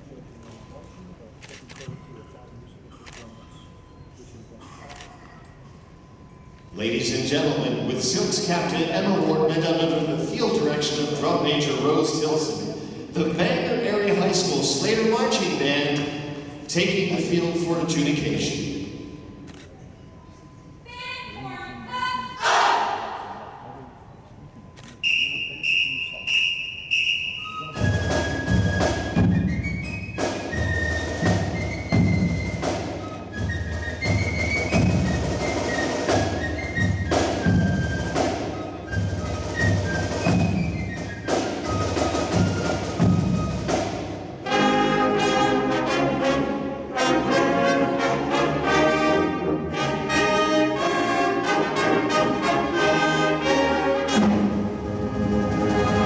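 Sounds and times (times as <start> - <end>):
marching band playing: 7.0 - 19.1, 26.3 - 56.0.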